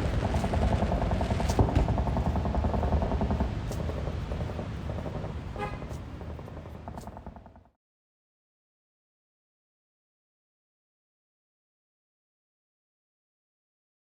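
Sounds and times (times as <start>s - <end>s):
low fluttering rumble: 0.0s - 7.8s
horn-like tone: 5.6s - 6.0s.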